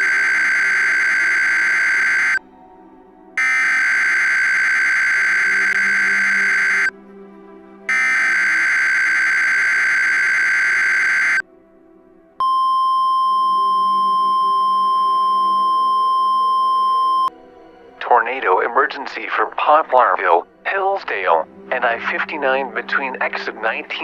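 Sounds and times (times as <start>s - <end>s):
steady alarm tone: 0.0s - 2.4s, 3.4s - 6.9s, 7.9s - 11.4s.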